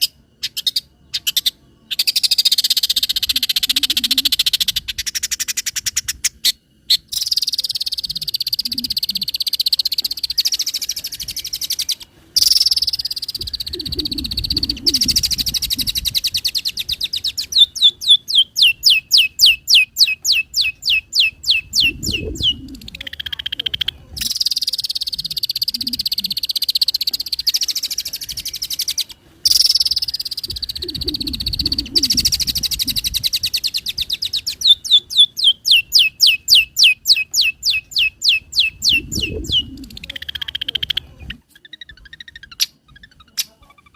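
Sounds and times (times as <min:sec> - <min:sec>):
shrike singing: 0:00.0 - 0:43.9
low croaking: 0:13.4 - 0:17.0, 0:30.5 - 0:33.3.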